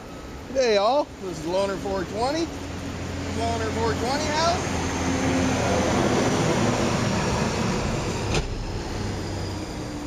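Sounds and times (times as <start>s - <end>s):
vehicle passing: 2.2s - 10.0s.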